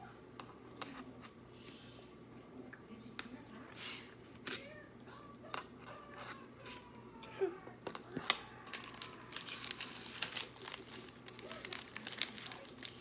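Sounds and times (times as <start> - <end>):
food packaging crinkling: 8.3 - 13.0.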